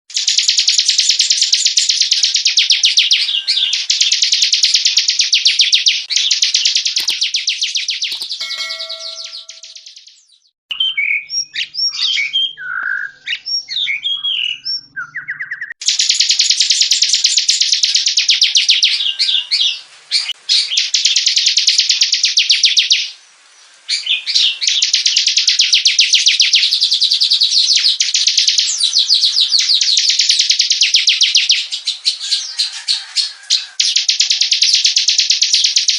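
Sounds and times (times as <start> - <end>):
bird fast ticking trills: 0.1 - 10.0, 33.8 - 35.9
bird chirps: 0.1 - 23.0.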